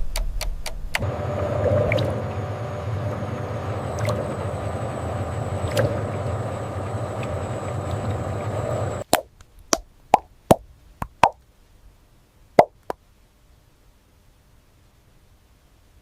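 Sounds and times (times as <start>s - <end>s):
machine hum with high whine: 0.0s - 9.0s
sharp hollow plops: 9.1s - 11.4s, 12.6s - 13.0s.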